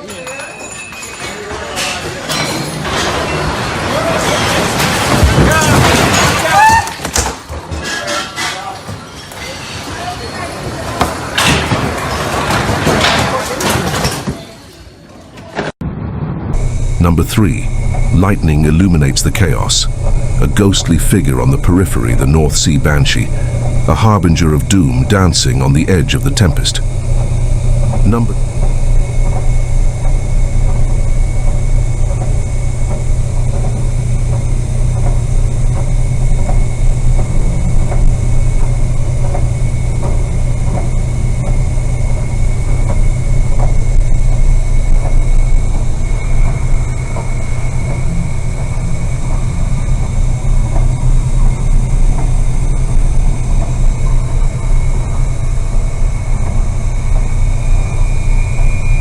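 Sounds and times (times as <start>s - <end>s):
low engine rumble: 16.6s - 59.0s
thin high whine: 16.6s - 59.0s.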